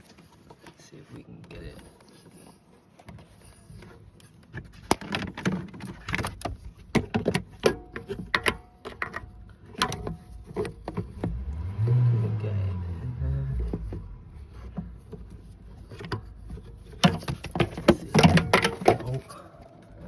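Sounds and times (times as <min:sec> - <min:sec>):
knocking and clicking on engine parts: 0:04.2 - 0:12.4, 0:13.6 - 0:20.0
low rumble of handling: 0:09.4 - 0:20.0.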